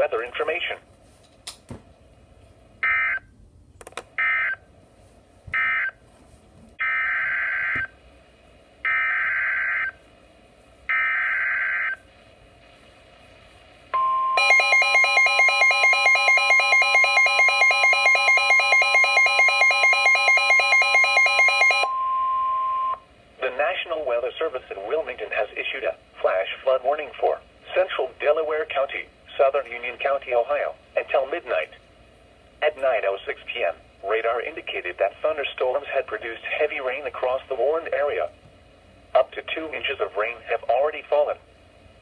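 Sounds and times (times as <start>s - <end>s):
steady warning alarm tone: 6.8s - 8.0s, 8.8s - 10.0s, 10.9s - 12.0s, 14.0s - 23.0s
rapid beeping alarm: 14.0s - 23.0s.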